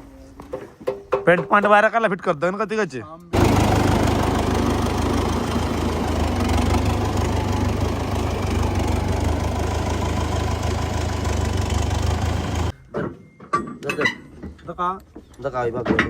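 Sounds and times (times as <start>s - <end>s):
tractor diesel engine idling: 3.4s - 12.8s.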